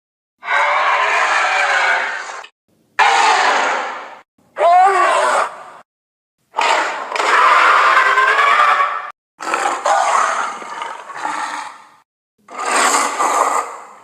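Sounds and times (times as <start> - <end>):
monster roars: 0.4 - 2.4, 6.6 - 14.0.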